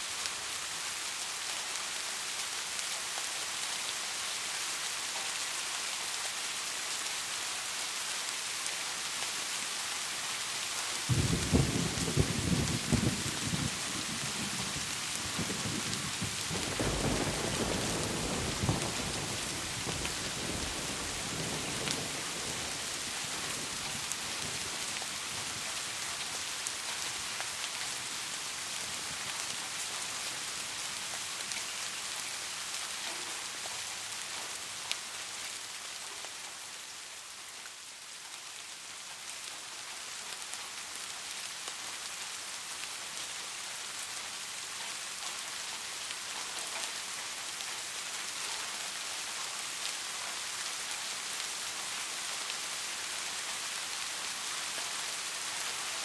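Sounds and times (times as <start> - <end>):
steady rain falling: 0.0 - 56.0
low rumble of thunder: 11.1 - 24.8.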